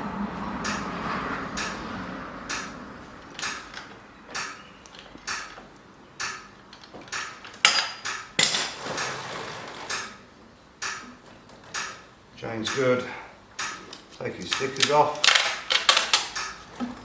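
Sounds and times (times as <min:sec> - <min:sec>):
metallic clicks and knocks: 0:01.6 - 0:01.8, 0:02.5 - 0:09.1, 0:12.7 - 0:17.0.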